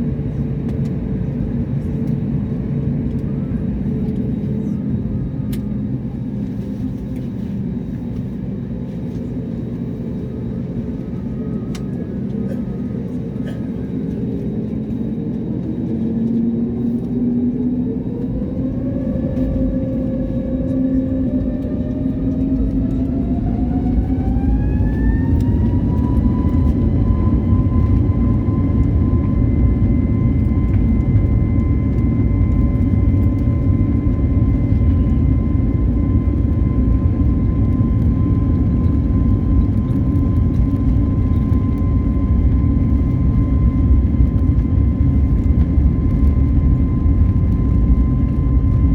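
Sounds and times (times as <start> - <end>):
jet engines whining: 0.0 - 48.9
low rumble: 16.8 - 48.9.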